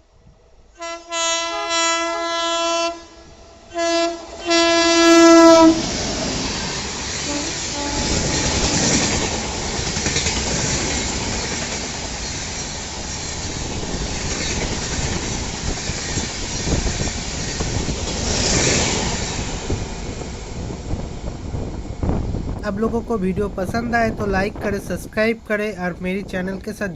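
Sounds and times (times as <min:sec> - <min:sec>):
train wheels rushing on rails: 0:03.2 - 0:25.3
wheels clattering over rail joints: 0:06.7 - 0:21.0.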